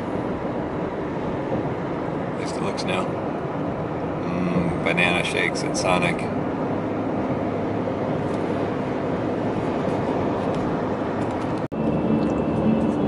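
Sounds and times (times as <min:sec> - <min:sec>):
road and engine noise inside car: 0:00.0 - 0:13.0
faint car radio music: 0:09.8 - 0:13.0.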